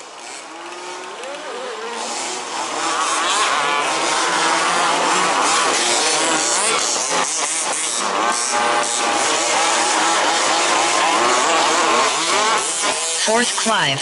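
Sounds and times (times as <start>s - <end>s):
rc car motors whining: 0.0s - 13.7s.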